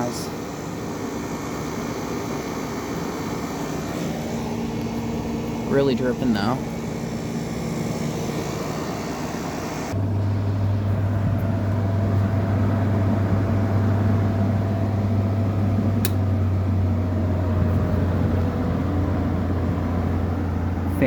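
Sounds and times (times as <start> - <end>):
air conditioner humming: 0.0 - 21.0.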